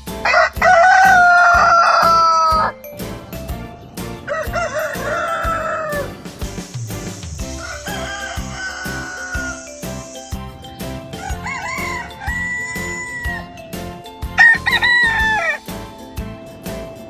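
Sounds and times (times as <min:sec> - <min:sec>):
background music with steady beat: 0:00.0 - 0:17.0
rooster crowing: 0:00.2 - 0:02.8, 0:04.2 - 0:06.2, 0:07.4 - 0:09.8, 0:11.1 - 0:13.6, 0:14.4 - 0:15.7.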